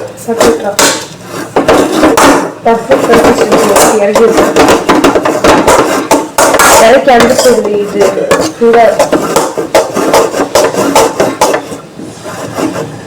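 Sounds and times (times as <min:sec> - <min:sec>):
utensils clinking on pots: 0:00.3 - 0:09.9.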